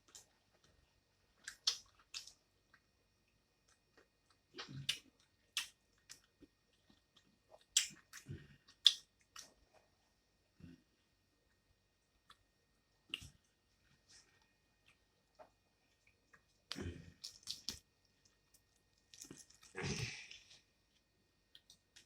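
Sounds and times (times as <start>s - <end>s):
person chewing: 1.4s - 2.8s, 3.7s - 9.8s, 14.8s - 20.6s
wet mouth smacks and clicks: 1.5s - 2.4s, 7.8s - 8.0s, 8.8s - 9.5s.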